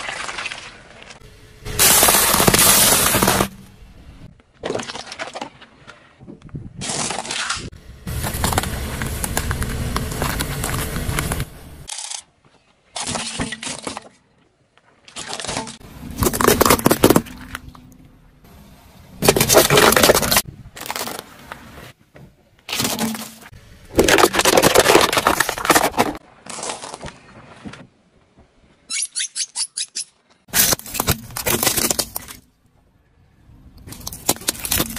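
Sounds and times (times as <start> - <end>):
objects crunching under car tyres: 0.0 - 3.8, 6.8 - 11.9, 15.1 - 17.8, 19.2 - 22.0, 22.6 - 27.9, 30.5 - 32.5, 33.8 - 34.9.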